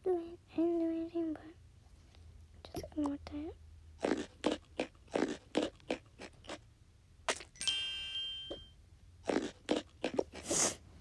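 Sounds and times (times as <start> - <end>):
bright ding: 7.6 - 8.8.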